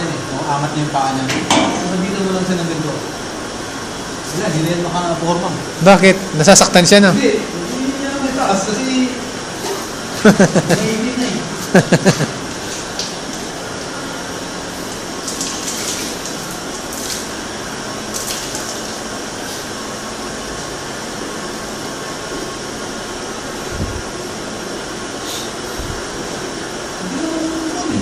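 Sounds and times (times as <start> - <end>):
milking machine vacuum pump hum: 0.0 - 28.0
short hisses: 25.2 - 25.6.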